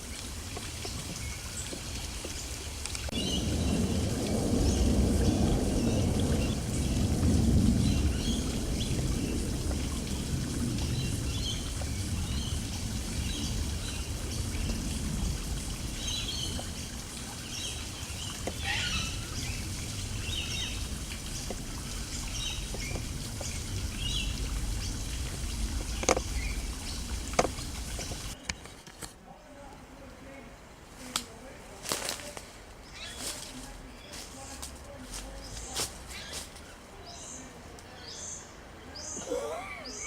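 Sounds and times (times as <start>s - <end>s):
small birds chirping: 0.0s - 28.6s.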